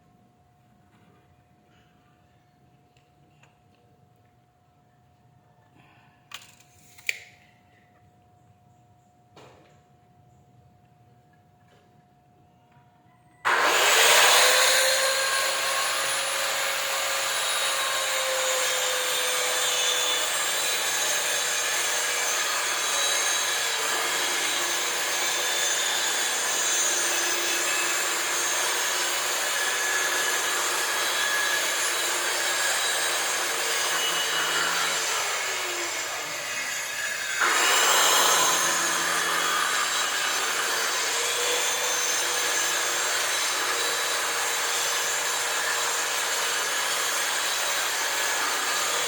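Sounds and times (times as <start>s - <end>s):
power tool motor whining: 13.5s - 49.0s.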